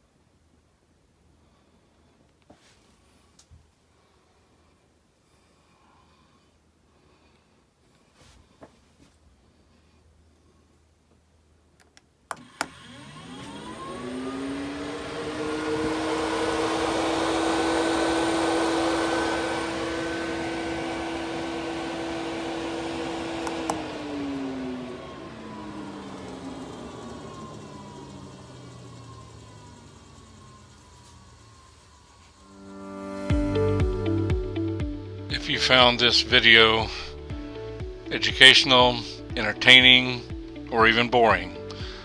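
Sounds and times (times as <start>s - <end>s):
fan switch click: 12.3s - 12.8s, 23.3s - 24.2s
exhaust fan motor whirring: 12.3s - 42.0s.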